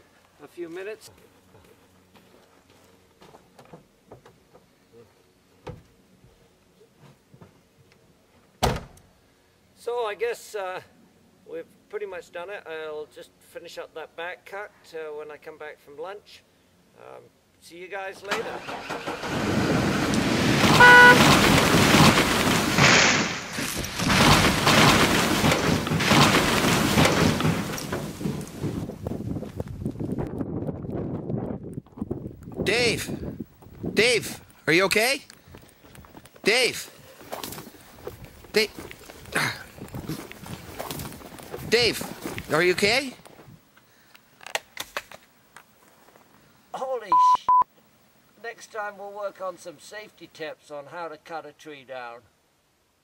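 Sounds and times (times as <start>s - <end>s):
tree crashing onto truck: 18.6s - 29.4s
car horn toot: 20.7s - 21.3s.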